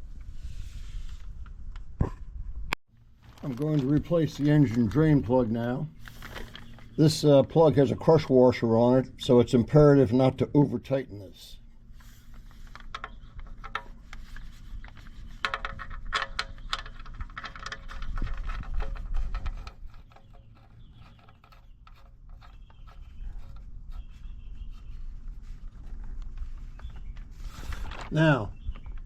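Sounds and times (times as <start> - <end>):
small metallic clicks and scrapes: 11.9 - 25.0.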